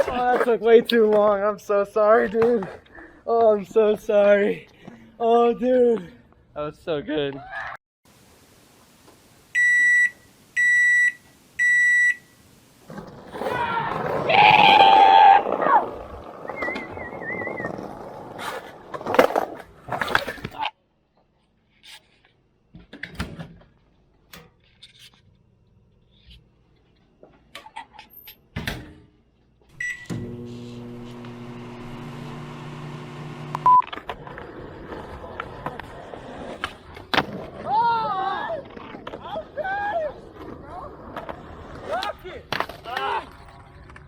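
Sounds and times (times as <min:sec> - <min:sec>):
microwave beep: 0:09.6 - 0:12.2, 0:29.8 - 0:30.3, 0:33.4 - 0:33.9
microwave keypad beep: 0:09.6 - 0:12.2, 0:29.8 - 0:30.1, 0:33.6 - 0:33.9
microwave oven humming: 0:30.1 - 0:33.7.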